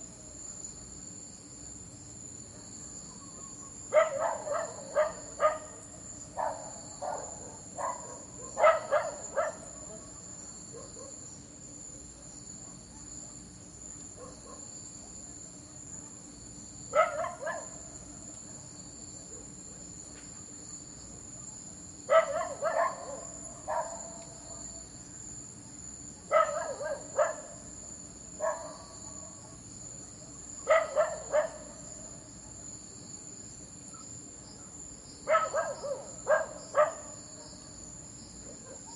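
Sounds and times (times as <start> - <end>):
crickets chirping: 0.0 - 38.9
dog barking: 3.5 - 5.8, 6.4 - 11.3, 14.2 - 14.7, 16.9 - 17.8, 22.1 - 24.8, 26.3 - 27.6, 28.4 - 29.6, 30.6 - 31.8, 35.2 - 37.8, 38.4 - 38.9.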